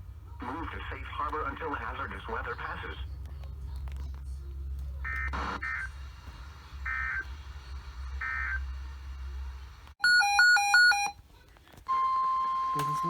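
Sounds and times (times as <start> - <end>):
radio hum: 0.2 - 10.0
two-tone electronic alert tone: 10.0 - 11.2.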